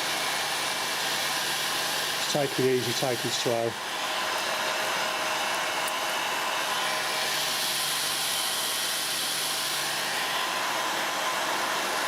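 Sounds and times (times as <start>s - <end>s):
hairdryer blowing: 0.0s - 12.0s.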